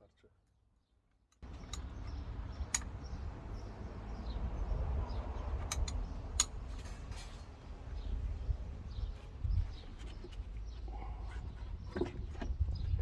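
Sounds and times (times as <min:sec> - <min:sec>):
sharp clicks: 0:05.7 - 0:06.6.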